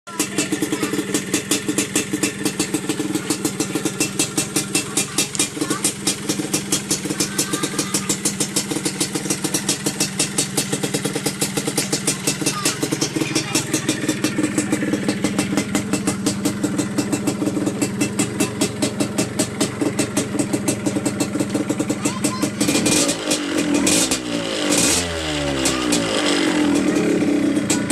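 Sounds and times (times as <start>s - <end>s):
motorcycle engine idling: 0.1s - 27.9s.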